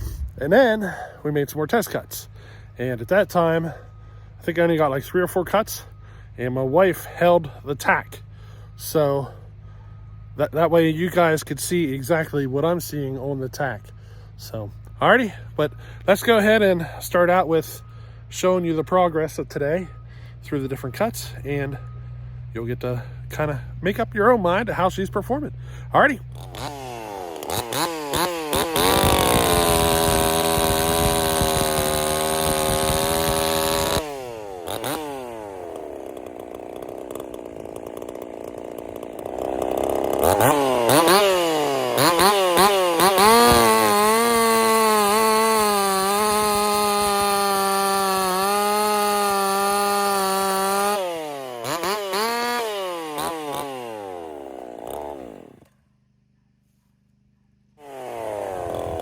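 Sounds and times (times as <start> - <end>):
chainsaw cutting wood: 19.8 - 55.9, 57.7 - 59.0
chainsaw revving: 22.6 - 55.8, 57.8 - 59.0.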